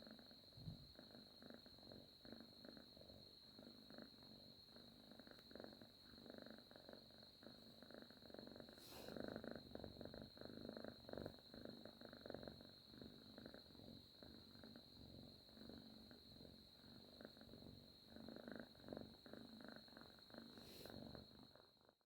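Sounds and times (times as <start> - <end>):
cat purring: 0.0 - 22.0.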